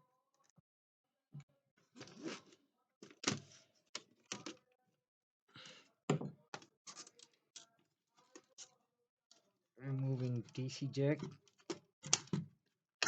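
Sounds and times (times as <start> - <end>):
laptop parts clicking and knocking: 11.2 - 12.6.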